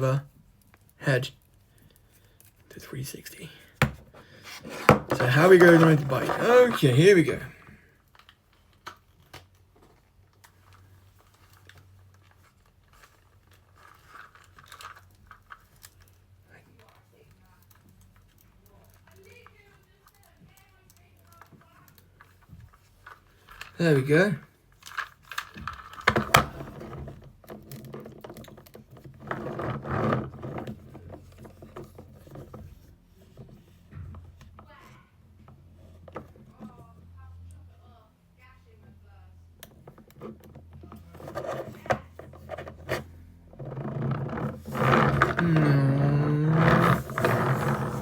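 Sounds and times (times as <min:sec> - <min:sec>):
plastic toy parts clicking and clattering: 0:10.3 - 0:16.9, 0:17.6 - 0:23.8, 0:24.7 - 0:26.8
rustling: 0:41.0 - 0:48.0.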